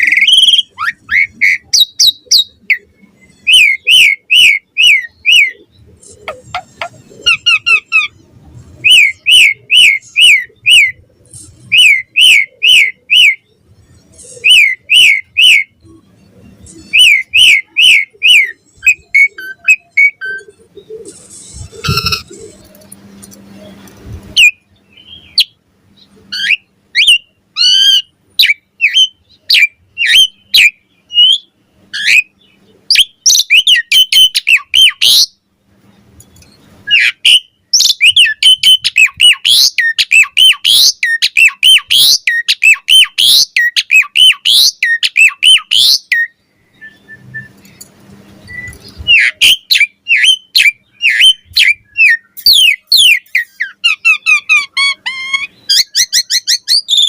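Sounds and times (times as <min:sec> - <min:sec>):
starling singing whistles: 0:08.8 - 0:11.0, 0:11.7 - 0:13.5, 0:36.8 - 0:47.8, 0:48.4 - 0:57.0.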